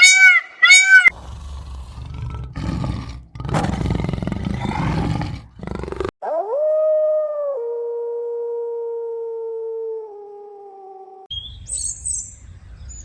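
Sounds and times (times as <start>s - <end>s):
lion roaring: 0.8s - 6.1s.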